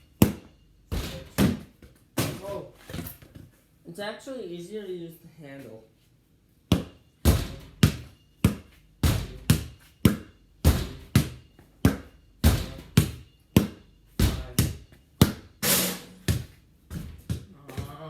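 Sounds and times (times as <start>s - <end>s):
basketball thudding off garage door: 0.2s - 3.1s, 6.8s - 14.7s.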